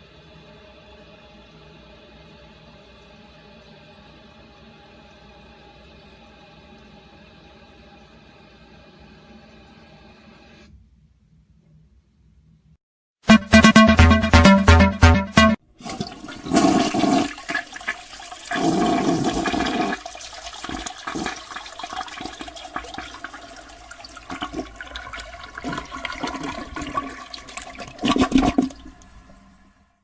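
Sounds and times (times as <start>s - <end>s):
short burst of music: 13.3s - 15.6s
toilet flushing: 15.7s - 30.0s.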